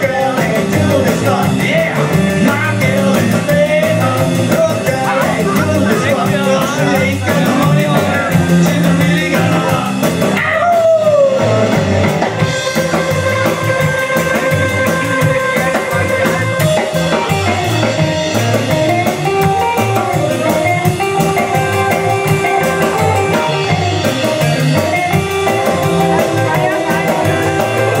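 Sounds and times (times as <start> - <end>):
drum beat: 0.0 - 28.0
electric guitar lead: 0.0 - 28.0
walking bass line: 0.0 - 28.0.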